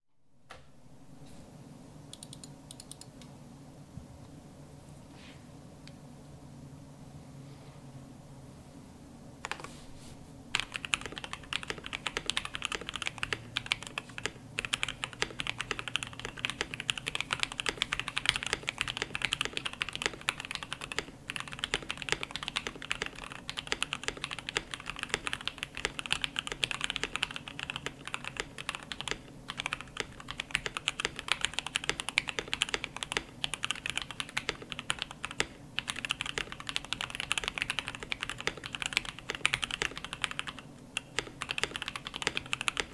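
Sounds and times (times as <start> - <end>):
fast mechanical keyboard typing: 10.6 - 42.9.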